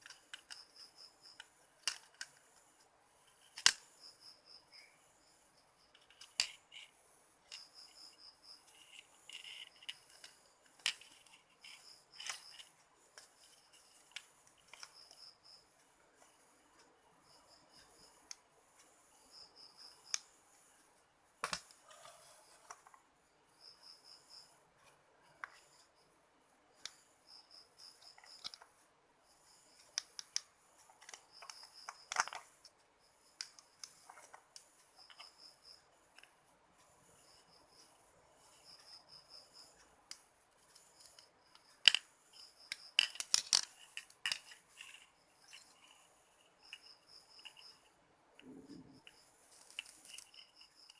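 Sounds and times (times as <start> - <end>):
small tools clicking and snipping: 0.0 - 2.4, 3.3 - 4.0, 5.9 - 15.3, 21.4 - 22.9, 27.8 - 28.7, 29.8 - 32.8, 40.1 - 50.9
faint high insect chirp: 0.0 - 50.9.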